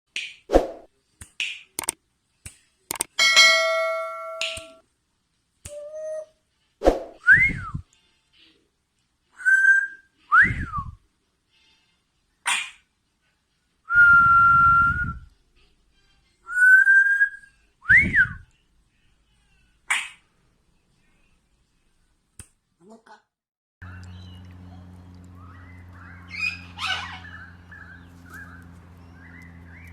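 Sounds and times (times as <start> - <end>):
parrot squawks: 12.5 - 12.8, 19.9 - 20.2, 26.0 - 28.1
parrot whistling: 25.4 - 28.6.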